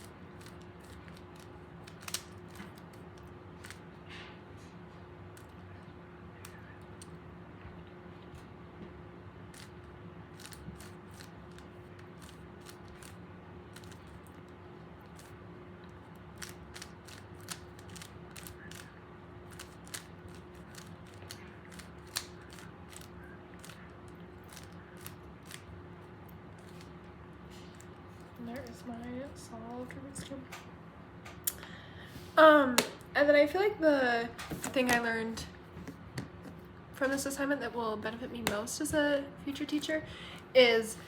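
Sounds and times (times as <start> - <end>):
puzzle cube plastic clicks: 16.4 - 18.9.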